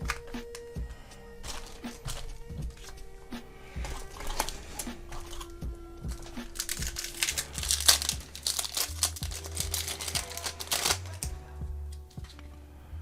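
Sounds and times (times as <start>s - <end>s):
background music with bass: 0.0s - 13.0s
foil wrapper crinkling: 1.4s - 3.0s, 3.8s - 12.4s.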